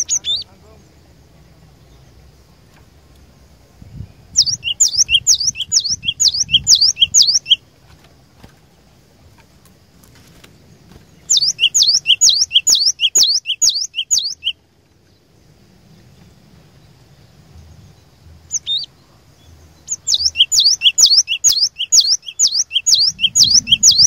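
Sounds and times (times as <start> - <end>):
bird singing whistled notes: 0.0 - 0.8, 3.8 - 7.6, 11.1 - 14.6, 17.6 - 24.0.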